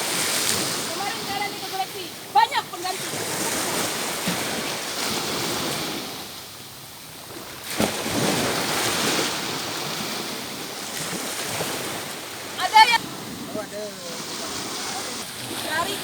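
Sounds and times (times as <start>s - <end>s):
surf washing onto beach: 0.0s - 16.0s.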